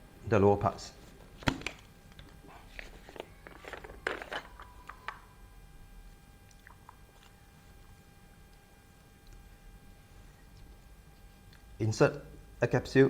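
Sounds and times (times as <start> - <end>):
plastic parts clicking and knocking: 3.1 - 5.2.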